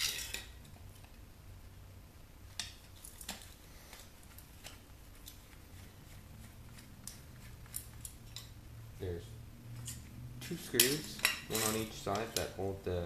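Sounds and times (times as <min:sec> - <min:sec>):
low room hum: 0:00.0 - 0:13.0
small parts clicking and tapping: 0:06.7 - 0:08.6.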